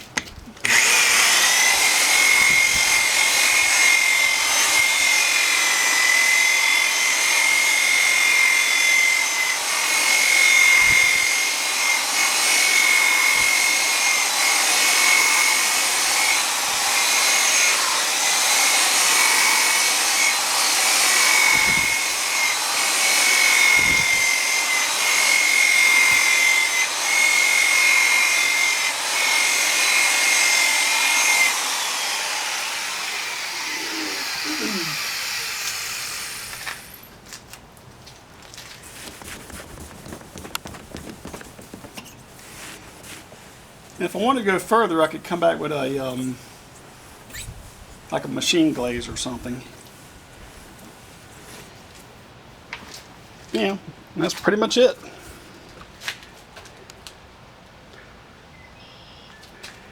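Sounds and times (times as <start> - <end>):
electric buffer motor whine: 0.6 - 37.1.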